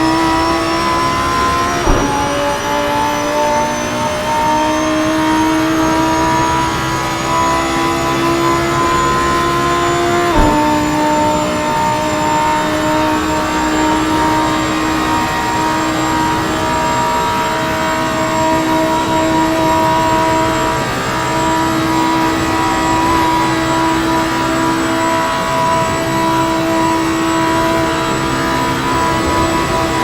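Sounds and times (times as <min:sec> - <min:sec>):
car engine droning: 0:00.0 - 0:30.0
road and wind noise: 0:00.0 - 0:30.0.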